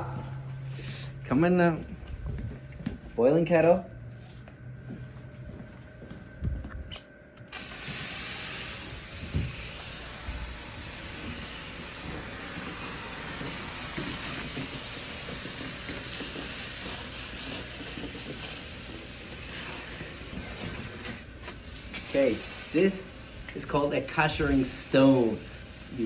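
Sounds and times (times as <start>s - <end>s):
water hissing on hot stone: 7.5s - 26.0s.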